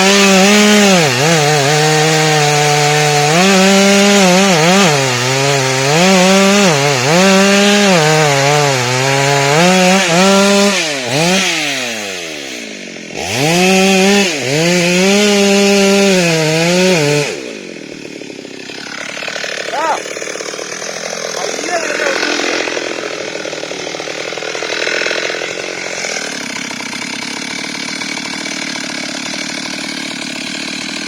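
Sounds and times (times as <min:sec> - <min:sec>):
chainsaw cutting wood: 0:00.0 - 0:31.0.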